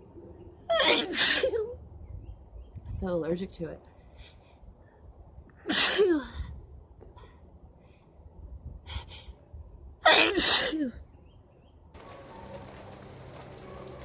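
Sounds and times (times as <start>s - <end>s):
woman sneezing: 10.1s - 10.9s.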